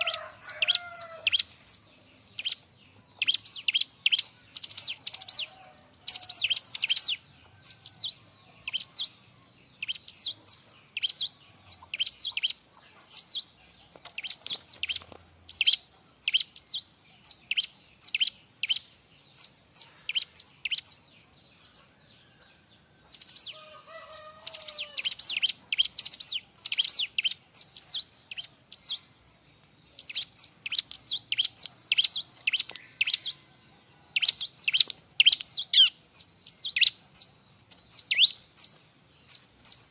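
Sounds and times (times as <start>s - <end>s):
bird chirping high and sharp: 3.2s - 5.5s, 6.1s - 9.2s, 23.1s - 29.1s, 30.0s - 33.4s, 34.2s - 39.9s.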